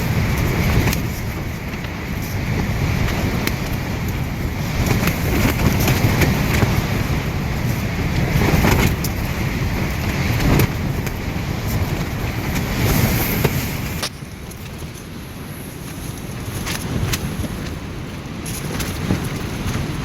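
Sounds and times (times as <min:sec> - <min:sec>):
strong gusty wind: 0:00.0 - 0:20.0.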